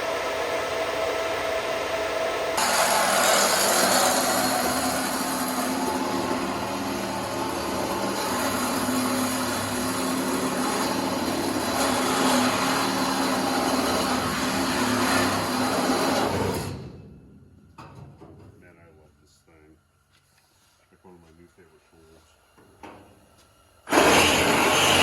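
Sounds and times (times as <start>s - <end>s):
power tool running on metal: 0.0s - 16.8s, 23.9s - 25.0s.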